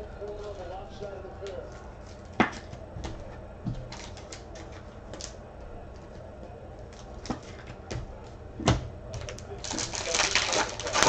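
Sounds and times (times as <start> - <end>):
trading cards clicking and tapping: 1.4 - 6.3.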